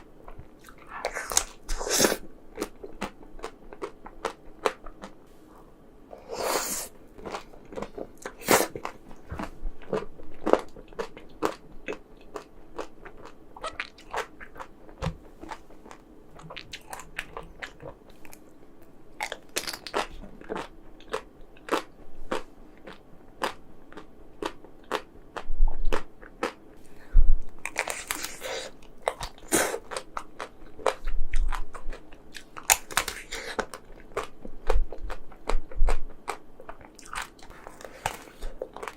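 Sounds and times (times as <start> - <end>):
chewing: 7.2 - 18.5, 27.6 - 38.9.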